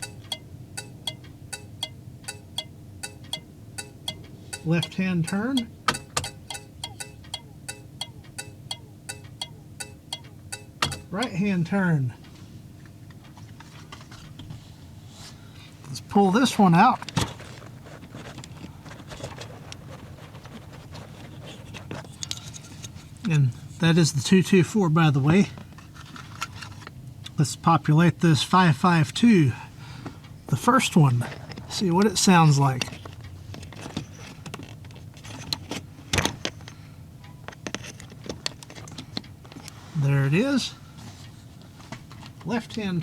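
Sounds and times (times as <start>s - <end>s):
relay clicks and handling knocks: 8.0s - 11.4s.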